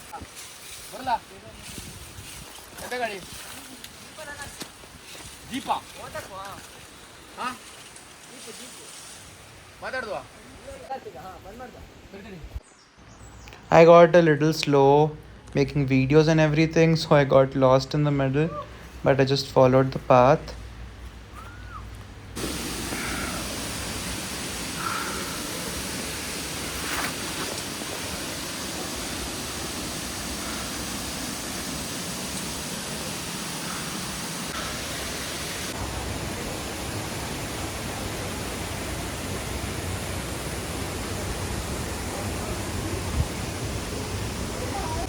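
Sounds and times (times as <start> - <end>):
waterfall rushing: 22.4 - 45.0.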